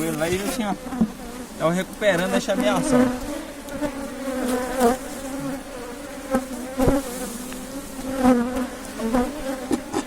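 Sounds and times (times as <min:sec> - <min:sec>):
honey bees buzzing: 0:00.0 - 0:10.0.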